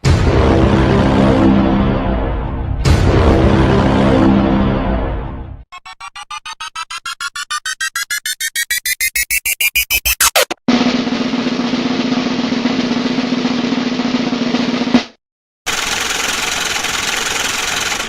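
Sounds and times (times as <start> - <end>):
accelerating drum roll: 10.3 - 15.2.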